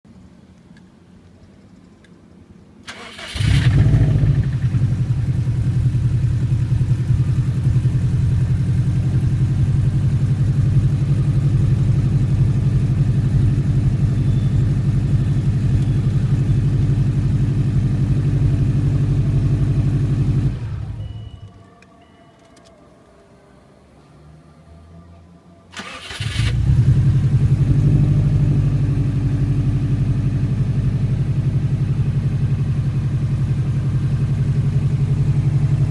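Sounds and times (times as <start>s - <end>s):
car engine idling: 2.8s - 24.5s, 25.6s - 35.9s
car engine cranking: 2.9s - 4.6s, 25.8s - 27.3s.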